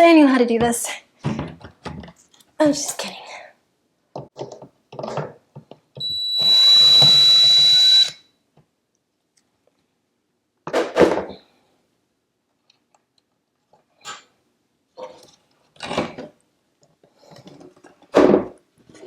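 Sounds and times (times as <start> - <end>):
cordless drill whining: 6.0 - 8.2.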